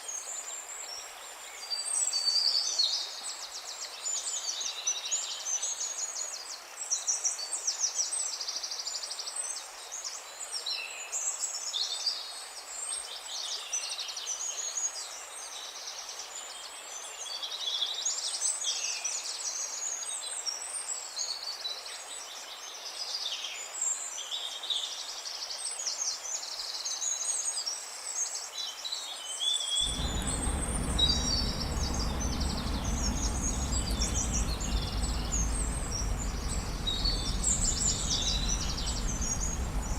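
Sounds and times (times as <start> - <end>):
songbirds singing: 29.8 - 39.9
steady low noise: 29.8 - 39.9.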